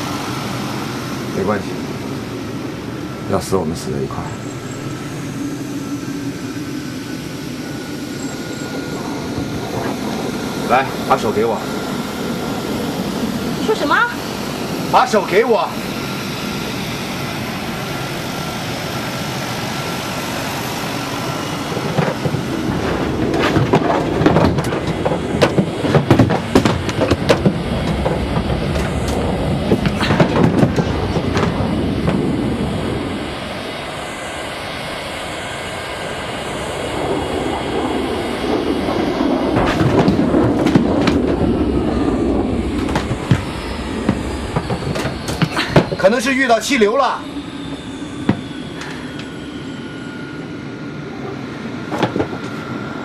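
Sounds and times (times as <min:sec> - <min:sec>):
airliner engine drone: 0:00.0 - 0:53.0
rattling clatter of knocks: 0:21.8 - 0:32.2, 0:39.6 - 0:41.4, 0:42.7 - 0:46.0, 0:51.9 - 0:52.6.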